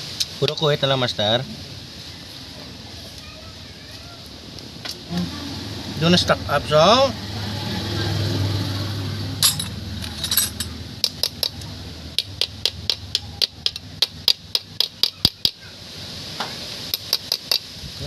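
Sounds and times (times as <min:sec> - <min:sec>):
low engine hum: 0:04.3 - 0:14.6
sharp metallic taps: 0:12.2 - 0:15.6.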